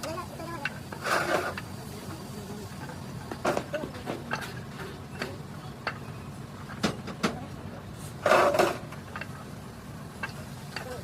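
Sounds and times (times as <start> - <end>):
sharp clicks and knocks: 2.8 - 7.5, 10.2 - 11.0.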